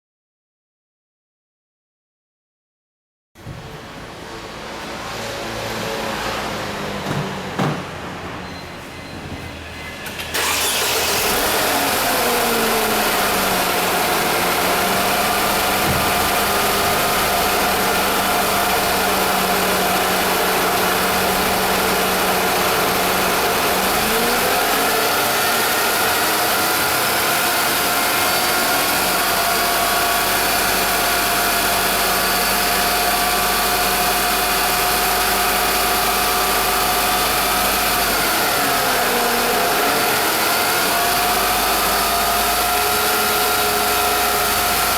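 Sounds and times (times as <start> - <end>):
power steering pump whining: 8.8 - 44.9
car engine running: 10.0 - 44.9.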